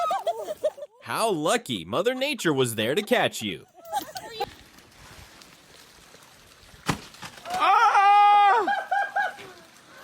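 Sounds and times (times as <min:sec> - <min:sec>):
person laughing: 0:00.0 - 0:01.0, 0:08.4 - 0:09.6
person yelling: 0:07.5 - 0:08.7.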